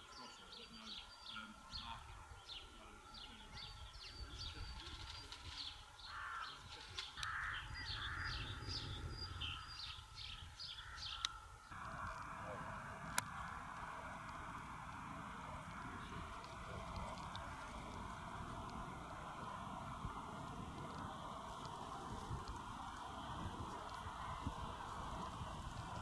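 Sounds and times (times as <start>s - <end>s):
harsh bird calls: 0.0s - 26.0s
small birds chirping: 0.0s - 26.0s
low steady rumble: 11.7s - 26.0s.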